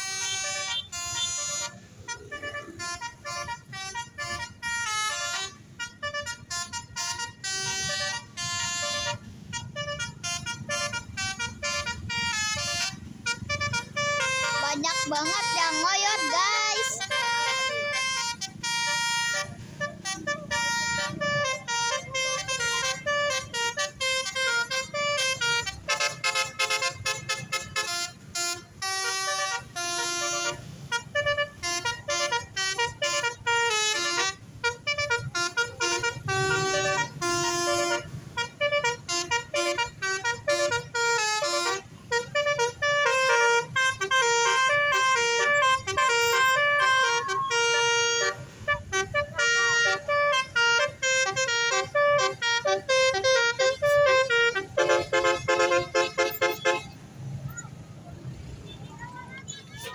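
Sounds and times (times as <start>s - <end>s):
multi-tone bus horn melody: 0.0s - 59.9s.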